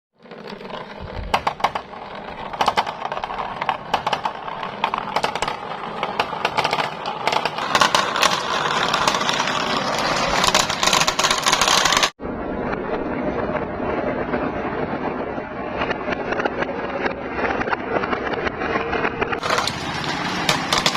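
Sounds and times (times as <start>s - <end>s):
marbles rolling down a track: 0.2s - 12.2s, 18.9s - 20.9s.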